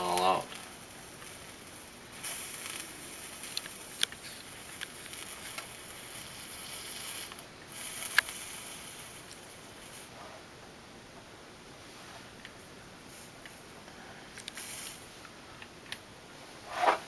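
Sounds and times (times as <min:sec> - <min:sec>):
soldering iron sizzling: 0:00.0 - 0:10.3, 0:12.0 - 0:15.4.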